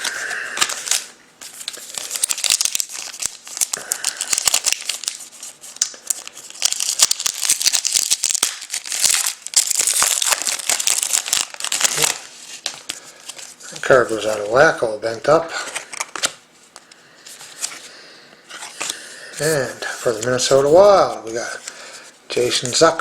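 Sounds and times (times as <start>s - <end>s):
cards being handled: 0.0s - 14.6s, 15.6s - 17.9s, 18.5s - 23.0s
plastic packaging crinkling and tearing: 0.0s - 14.6s.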